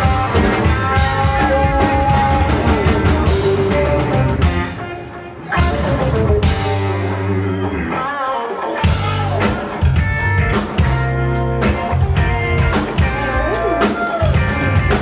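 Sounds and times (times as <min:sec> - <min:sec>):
rock band playing live: 0:00.0 - 0:15.0.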